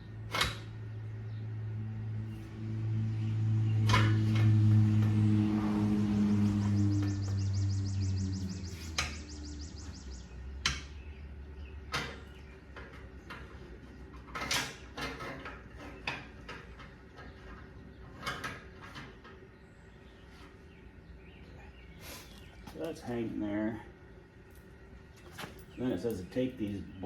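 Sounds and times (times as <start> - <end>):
metal exhaust parts clicking: 0.2 - 1.5, 2.2 - 19.5.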